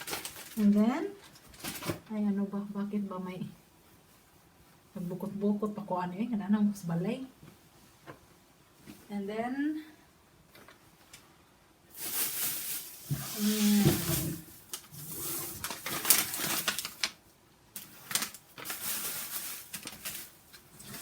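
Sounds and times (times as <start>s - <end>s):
plastic bags rustling: 0.0s - 2.1s, 11.9s - 21.0s.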